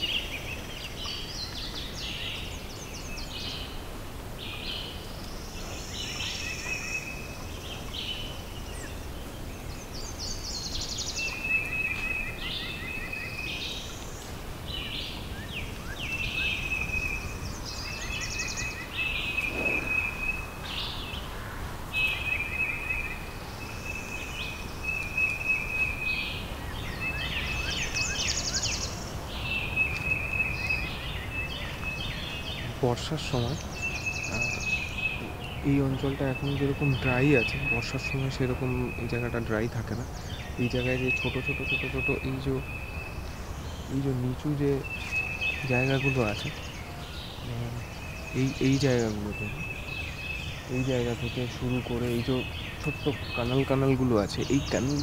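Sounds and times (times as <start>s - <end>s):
wild birds singing and calling: 0.0s - 55.0s
steady low rumble: 18.9s - 21.8s.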